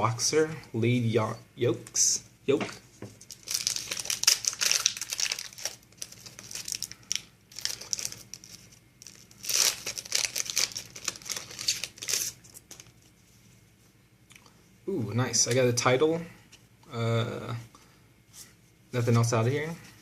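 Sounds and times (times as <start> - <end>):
foil wrapper crinkling and tearing: 3.2 - 13.0.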